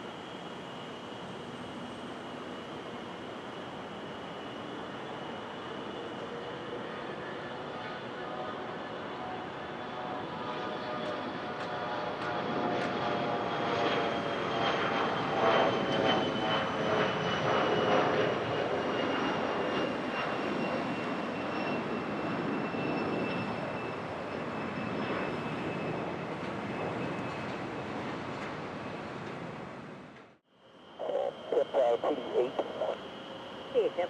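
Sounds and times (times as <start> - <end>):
high jet engine whine: 0.0 - 34.0
jet plane passing by: 0.0 - 34.0.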